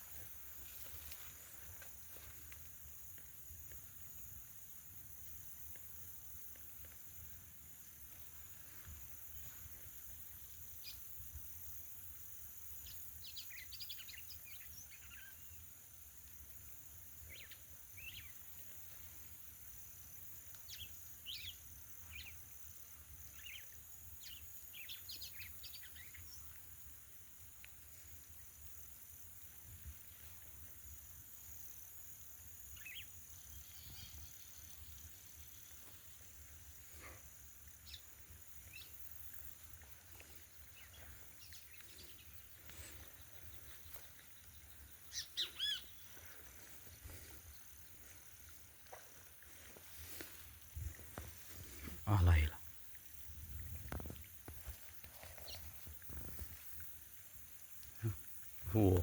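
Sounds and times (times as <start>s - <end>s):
steady high hiss: 0.0s - 59.0s
small bird chirping: 40.7s - 46.4s.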